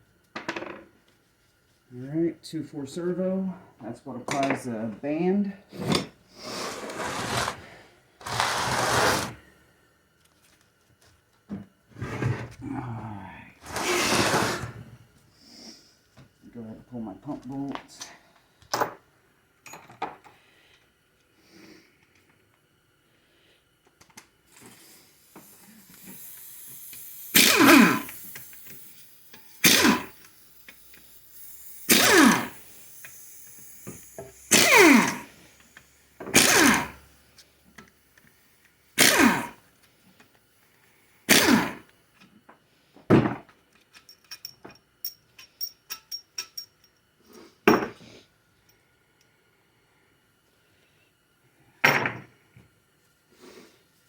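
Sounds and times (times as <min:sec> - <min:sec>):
impact wrench bursts: 0:13.6 - 0:14.7, 0:24.5 - 0:39.7, 0:41.2 - 0:41.9.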